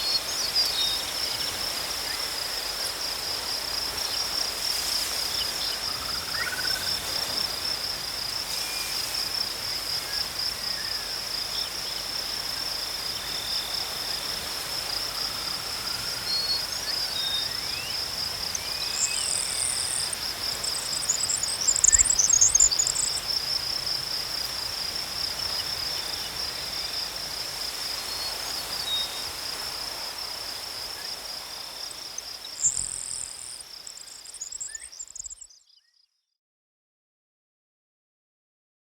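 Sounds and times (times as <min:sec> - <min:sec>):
insects trilling: 0:00.0 - 0:35.6
fainter insect trill: 0:00.1 - 0:35.8.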